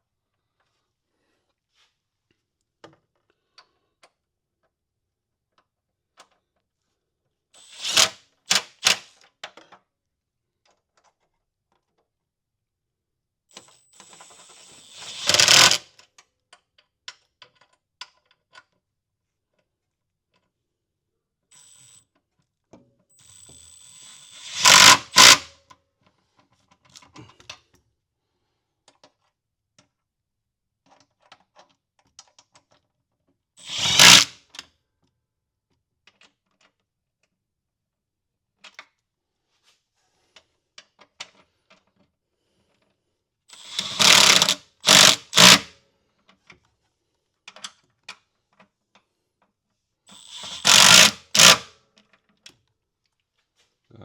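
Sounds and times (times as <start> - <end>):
handheld power tool bursts: 7.6 - 9.1, 14.0 - 15.9, 23.8 - 25.5, 33.6 - 34.4, 43.5 - 45.7, 50.1 - 51.7.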